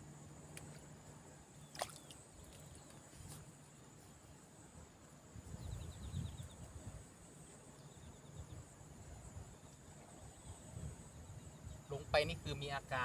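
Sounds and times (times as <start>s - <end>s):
insects droning: 0.0s - 13.0s
wind rumble on microphone: 4.8s - 13.0s.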